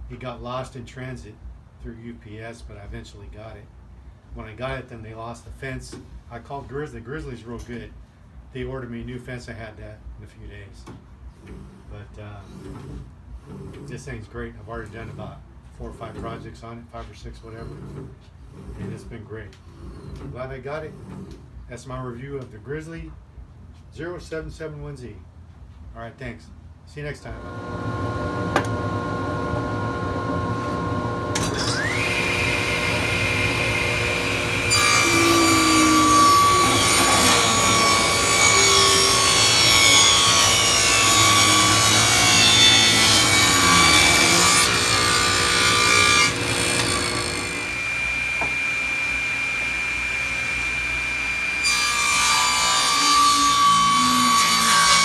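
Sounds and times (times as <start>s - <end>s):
table saw motor: 27.4s - 55.0s
saw blade cutting wood: 29.6s - 55.0s.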